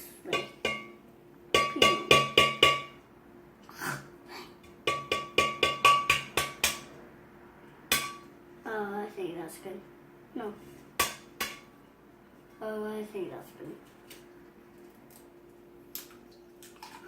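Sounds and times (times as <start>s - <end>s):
utensil clinking against bowl: 0.3s - 3.0s, 4.6s - 6.9s.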